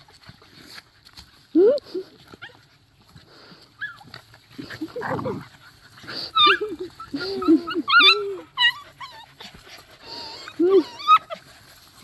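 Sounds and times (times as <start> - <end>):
dog whining and whimpering: 6.3 - 9.5, 10.1 - 11.4.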